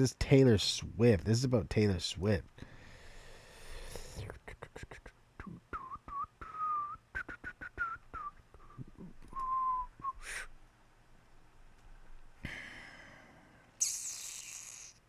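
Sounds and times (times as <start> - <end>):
person whistling softly: 5.4 - 10.5.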